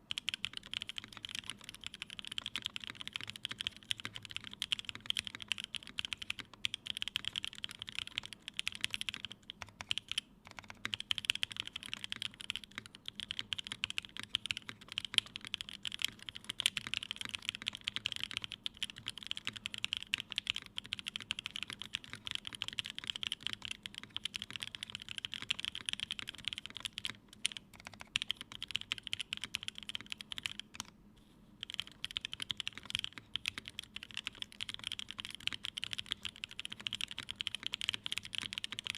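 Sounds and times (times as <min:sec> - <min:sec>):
fast typing on mechanical keyboard: 0:00.0 - 0:30.9, 0:31.6 - 0:38.9.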